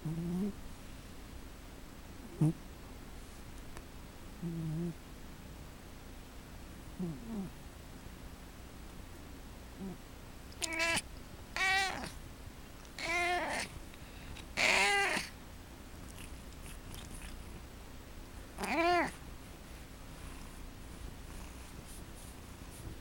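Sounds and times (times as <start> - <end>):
cat making squeaky calls: 10.6 - 11.0, 11.6 - 12.1, 13.0 - 13.7, 14.6 - 15.3.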